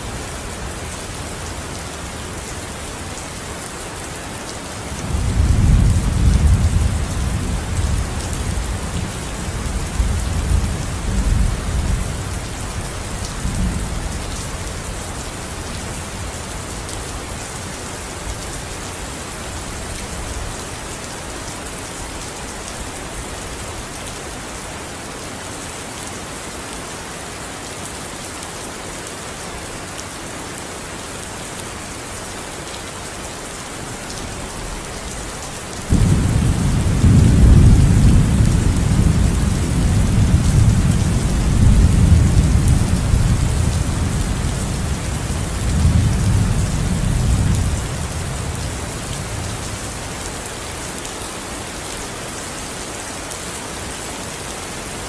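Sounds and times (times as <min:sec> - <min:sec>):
steady rain hissing: 0:00.0 - 0:55.0
thunder rumbling: 0:35.9 - 0:48.6.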